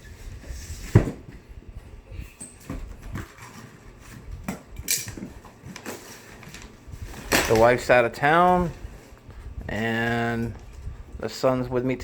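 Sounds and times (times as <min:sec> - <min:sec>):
cardboard box knocks and thumps: 0:00.8 - 0:01.4.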